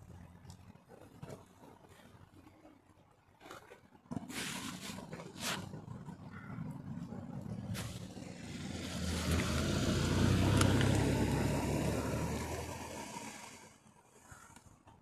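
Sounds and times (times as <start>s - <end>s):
car driving past: 6.1s - 13.8s.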